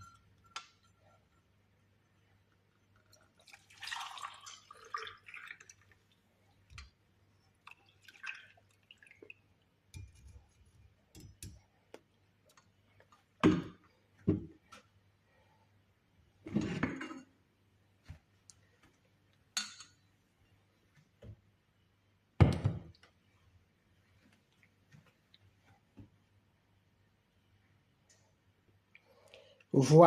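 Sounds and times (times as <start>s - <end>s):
liquid pouring and dripping: 0.1s - 11.6s.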